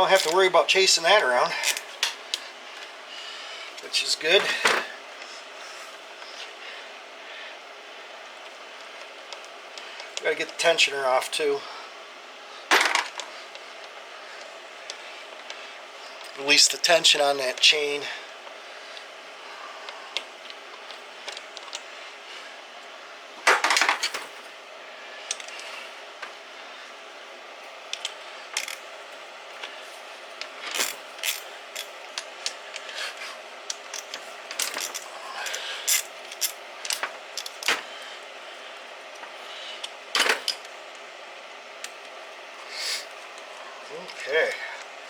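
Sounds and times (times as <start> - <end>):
tools clinking on metal parts: 30.6 - 32.8, 33.7 - 37.9.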